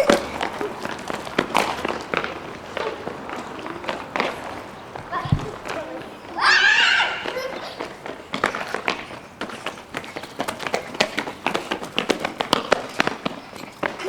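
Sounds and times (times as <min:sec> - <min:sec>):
children running footsteps: 0:00.0 - 0:14.0
faint children's voices: 0:02.5 - 0:12.4.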